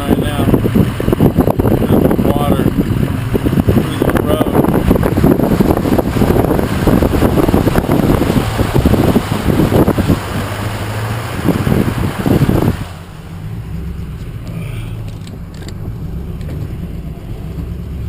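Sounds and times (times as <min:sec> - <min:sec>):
wind noise on microphone: 0:00.0 - 0:13.7, 0:15.0 - 0:17.8
low engine hum: 0:00.0 - 0:18.0.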